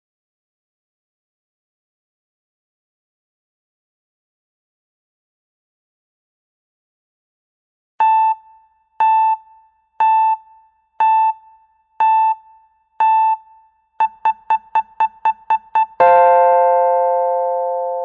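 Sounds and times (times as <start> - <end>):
timer beeps: 8.0 - 16.9
ringing electronic chord: 16.0 - 18.0.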